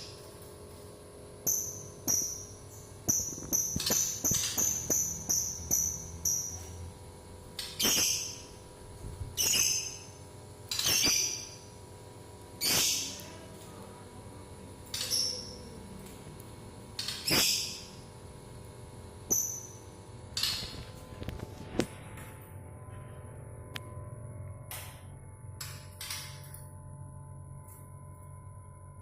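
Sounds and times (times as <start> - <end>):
bird shrill calls: 7.8 - 8.5, 9.4 - 11.7, 12.6 - 13.2, 17.0 - 18.0.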